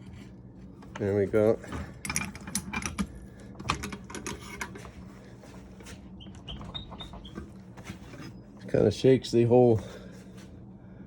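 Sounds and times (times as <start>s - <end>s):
short high squeaks: 6.2s - 7.4s.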